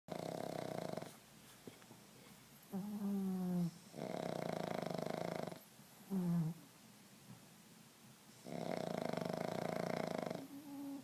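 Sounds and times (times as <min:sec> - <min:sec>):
dog snoring: 0:00.1 - 0:01.2, 0:02.7 - 0:06.6, 0:08.3 - 0:11.0.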